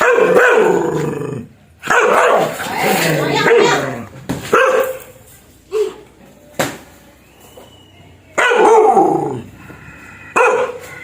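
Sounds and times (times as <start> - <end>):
dog barking fiercely: 0.0 - 1.0, 1.8 - 2.6, 4.5 - 5.1, 8.4 - 9.2, 10.4 - 10.8.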